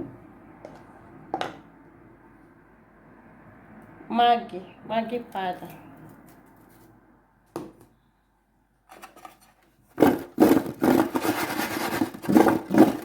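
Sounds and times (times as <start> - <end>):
rubbing scraping strokes: 9.4 - 13.0.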